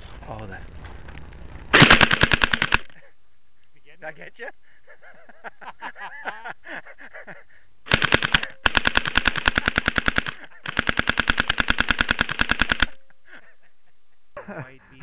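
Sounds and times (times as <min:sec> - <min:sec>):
airsoft gun rapid firing: 0:01.7 - 0:02.9, 0:07.9 - 0:13.0.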